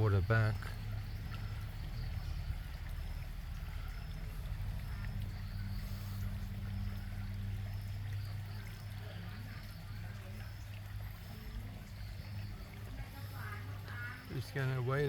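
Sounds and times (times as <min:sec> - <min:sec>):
small waterfall trickling and splashing: 0:00.0 - 0:15.0
low hum: 0:00.5 - 0:14.1.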